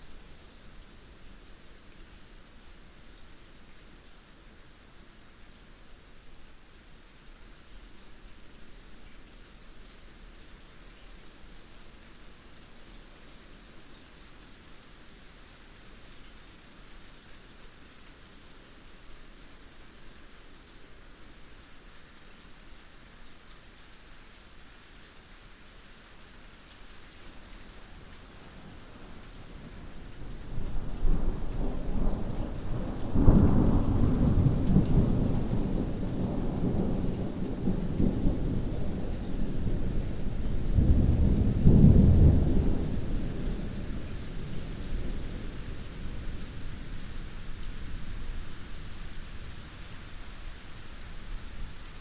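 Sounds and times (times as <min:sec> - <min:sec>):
heavy rain: 0:00.0 - 0:52.0
rolling thunder: 0:30.4 - 0:48.1.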